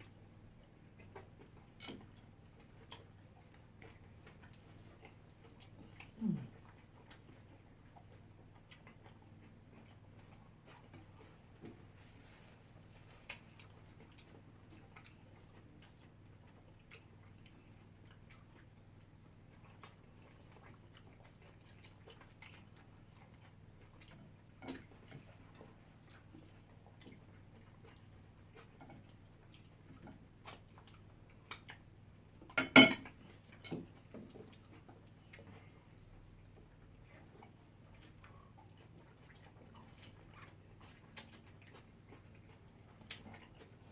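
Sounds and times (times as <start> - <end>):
chewing and mouth clicks: 0.0 - 12.0, 12.6 - 43.9
dishes and cutlery clinking: 32.6 - 33.9.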